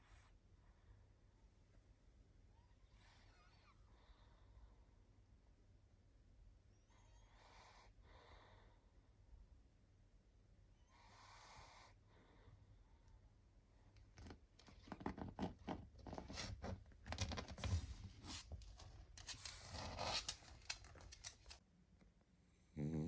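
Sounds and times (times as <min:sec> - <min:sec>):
rustling and scratching: 0:14.1 - 0:21.6.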